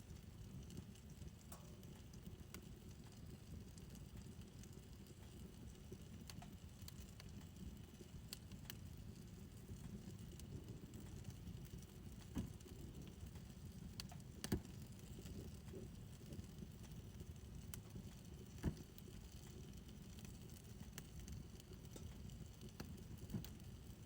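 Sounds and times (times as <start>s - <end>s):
fire crackling: 0.0s - 24.0s
wood fire rumbling: 0.0s - 24.0s
sharp fire pops: 10.4s - 13.0s, 13.9s - 16.6s, 17.2s - 21.1s.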